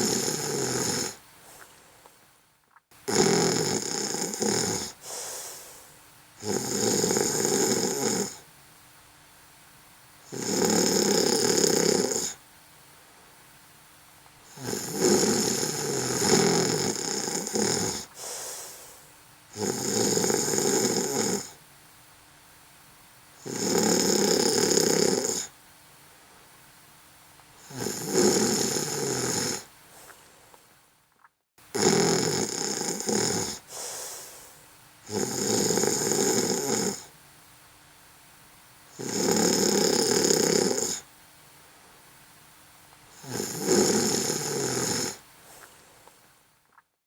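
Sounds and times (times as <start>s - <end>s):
person snoring: 0.0s - 1.2s, 3.1s - 5.8s, 6.4s - 8.4s, 10.3s - 12.4s, 14.5s - 21.6s, 23.4s - 25.5s, 27.6s - 29.7s, 31.7s - 37.1s, 38.9s - 41.1s, 43.1s - 45.2s.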